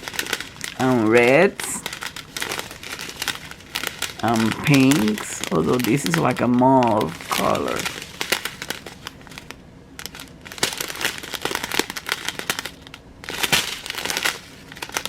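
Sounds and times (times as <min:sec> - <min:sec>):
plastic bags crinkling: 0:00.0 - 0:15.0.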